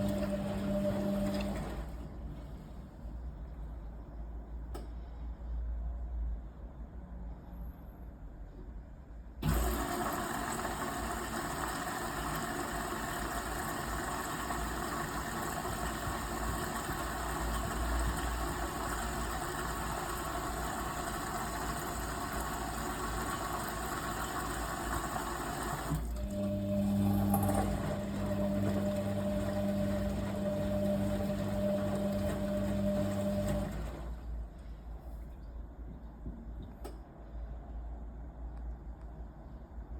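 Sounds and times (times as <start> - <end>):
water rushing in washing machine: 0.0 - 2.7, 9.4 - 34.3
washing machine electric hum: 0.0 - 5.3, 9.2 - 37.4.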